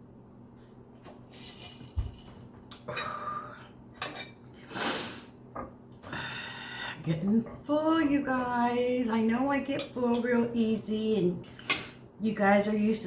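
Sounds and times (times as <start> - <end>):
cutlery scraping on a plate: 4.0 - 4.4.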